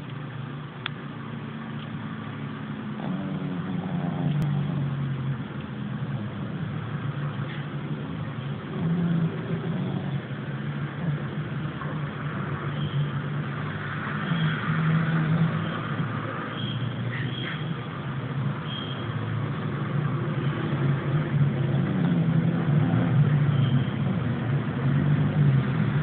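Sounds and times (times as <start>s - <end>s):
pet snoring: 2.8s - 5.4s, 6.2s - 12.8s, 13.6s - 16.5s, 20.4s - 25.6s.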